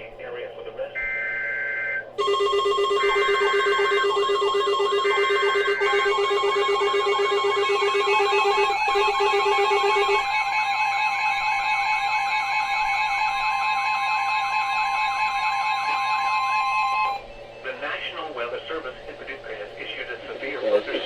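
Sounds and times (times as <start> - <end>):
warbling alarm tones: 1.0 - 17.3.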